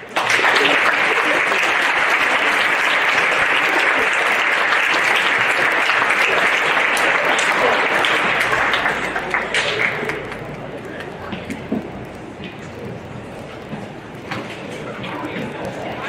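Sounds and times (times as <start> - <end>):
large crowd applauding: 0.0 - 12.0.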